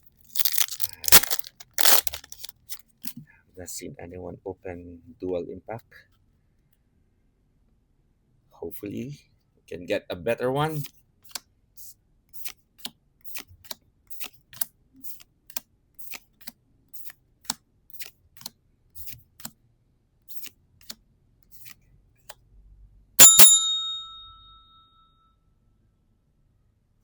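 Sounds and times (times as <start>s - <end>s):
bell-like ding: 23.2s - 25.3s.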